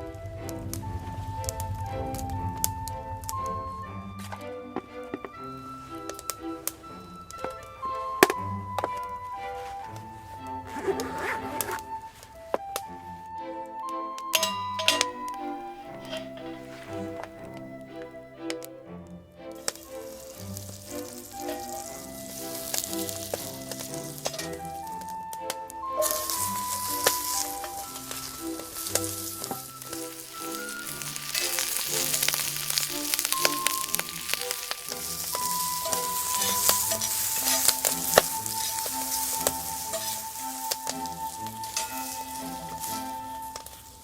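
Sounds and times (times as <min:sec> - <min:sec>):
background music: 0:00.0 - 0:44.0
sharp crackles and pops: 0:27.0 - 0:42.5
food sizzling in a frying pan: 0:28.7 - 0:42.8.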